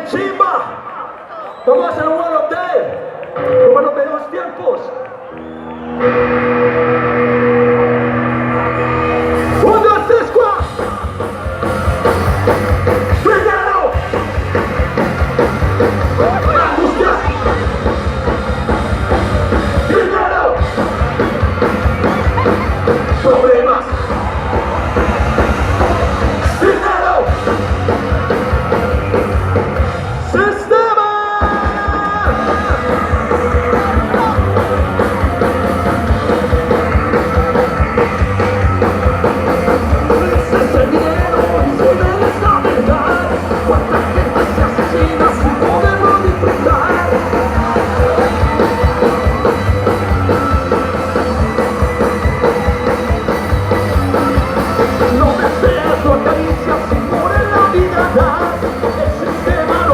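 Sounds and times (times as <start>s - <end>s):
rock band playing: 5.2s - 59.9s
person singing and yelling: 16.1s - 17.9s, 19.7s - 21.2s, 25.8s - 28.4s, 30.1s - 53.3s, 54.4s - 59.9s.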